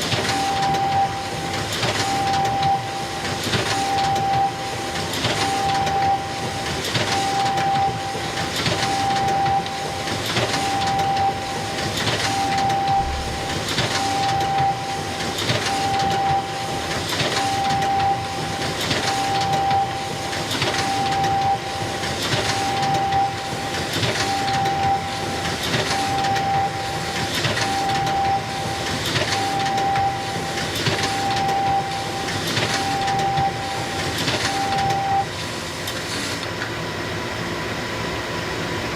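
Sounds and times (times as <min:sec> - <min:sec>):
photocopier whirring: 0:00.0 - 0:36.5
beep-like tone: 0:12.7 - 0:14.9.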